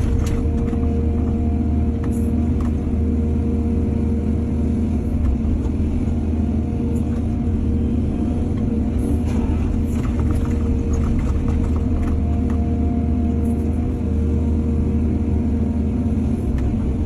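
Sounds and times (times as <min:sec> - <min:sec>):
excavator diesel engine rumbling: 0:00.0 - 0:17.0.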